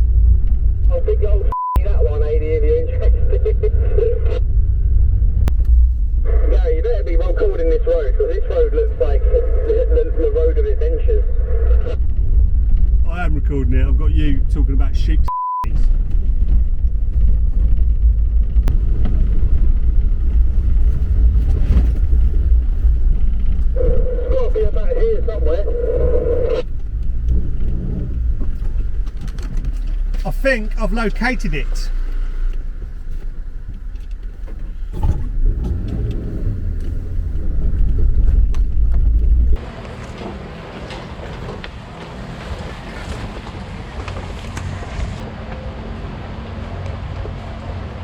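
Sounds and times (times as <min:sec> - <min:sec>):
vehicle rumbling on rough lane: 0:00.0 - 0:48.0
short steady beep: 0:01.5 - 0:01.8, 0:15.3 - 0:15.7.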